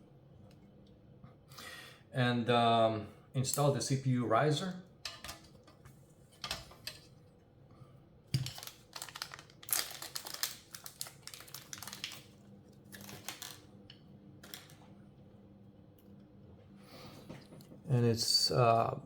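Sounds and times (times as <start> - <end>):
crinkling rustles: 8.3 - 15.0.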